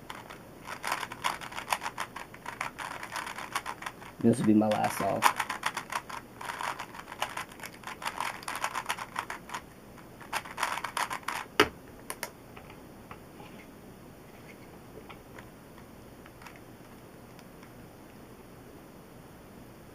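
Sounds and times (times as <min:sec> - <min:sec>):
puzzle cube clicking: 0:00.1 - 0:09.6, 0:10.2 - 0:11.5.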